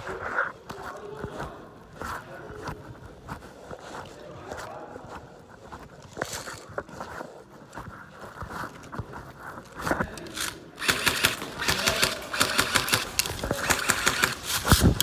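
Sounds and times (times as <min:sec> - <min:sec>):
scattered clicks: 0:09.8 - 0:15.0
pellet impacts: 0:10.1 - 0:15.0
airsoft guns firing: 0:10.2 - 0:15.0.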